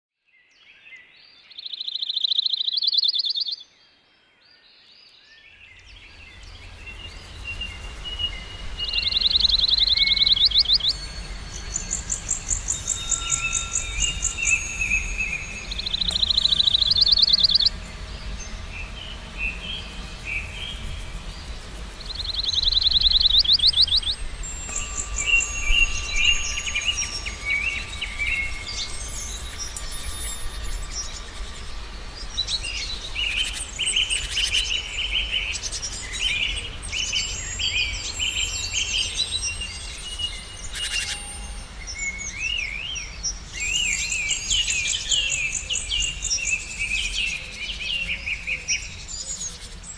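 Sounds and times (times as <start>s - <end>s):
bird song ending in a trill: 5.0s - 49.9s
low steady rumble: 6.1s - 35.8s.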